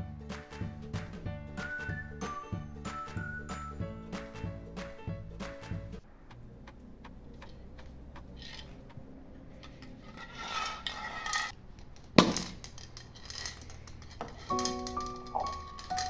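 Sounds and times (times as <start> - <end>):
small clicks: 6.3 - 9.2
utensil scraping hard container: 9.6 - 11.6.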